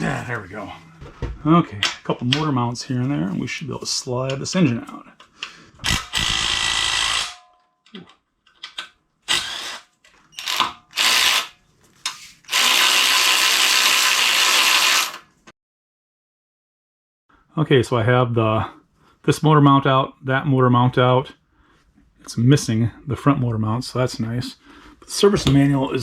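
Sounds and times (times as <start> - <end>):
handheld power tool running: 5.8 - 7.4, 9.3 - 11.6, 12.5 - 15.3.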